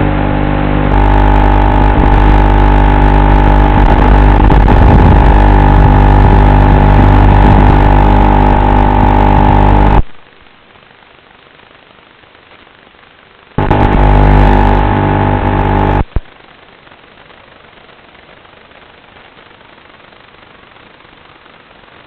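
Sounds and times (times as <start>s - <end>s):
drone motors whining: 13.6s - 16.1s.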